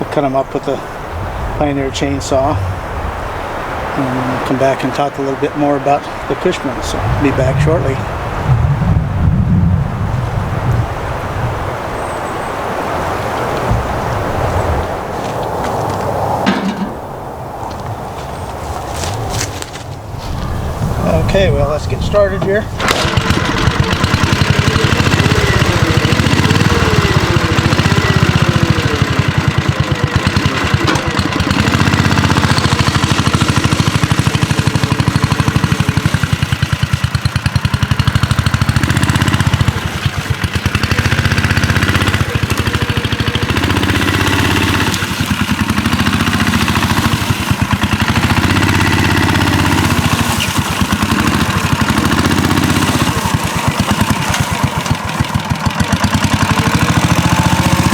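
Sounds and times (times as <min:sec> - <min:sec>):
single-cylinder scooter engine running: 0:21.1 - 0:57.9.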